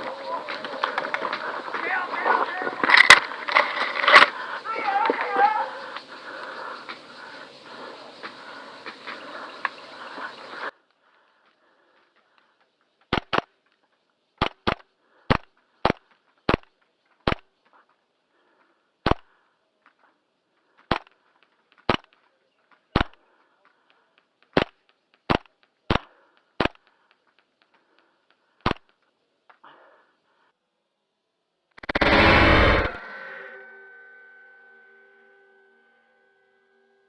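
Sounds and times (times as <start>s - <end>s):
airsoft gun shots: 13.1s - 13.5s.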